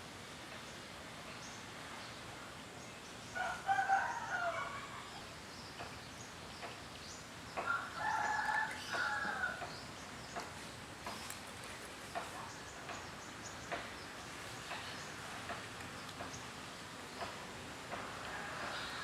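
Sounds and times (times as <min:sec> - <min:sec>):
rooster crowing: 0:03.4 - 0:05.2, 0:07.6 - 0:09.6, 0:18.2 - 0:19.0.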